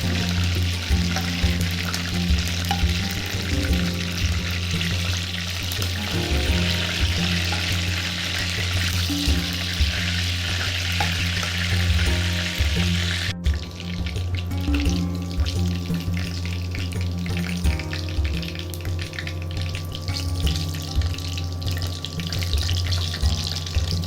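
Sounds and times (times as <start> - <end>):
food sizzling in oil: 0.0 - 13.3
background music: 0.0 - 24.0.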